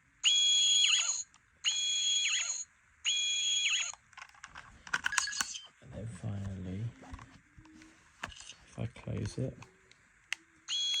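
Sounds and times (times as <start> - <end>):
toy electronic whine with falling sweep: 0.2 - 4.0, 10.6 - 11.0.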